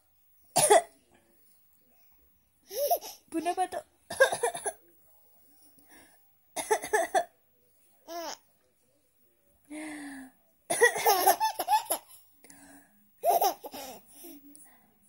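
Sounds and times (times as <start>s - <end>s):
baby laughing: 2.7s - 3.2s, 10.8s - 12.2s, 13.2s - 14.0s.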